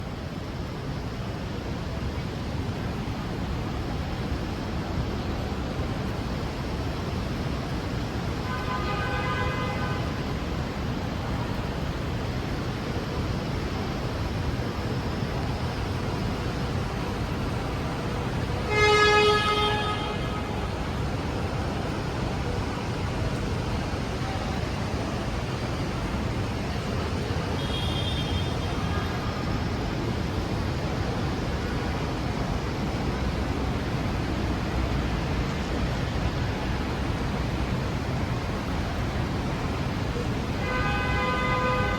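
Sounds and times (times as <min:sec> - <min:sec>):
city street traffic: 0:00.0 - 0:41.9
car horn honking: 0:18.7 - 0:20.6, 0:27.6 - 0:29.2, 0:40.6 - 0:41.9.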